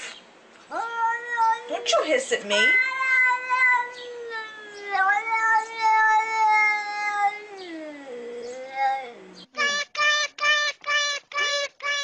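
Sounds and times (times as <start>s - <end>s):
cat yowling: 0.7s - 9.3s.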